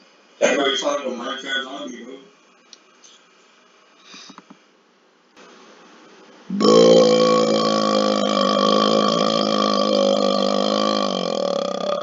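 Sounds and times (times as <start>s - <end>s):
long low burp: 6.5s - 12.0s.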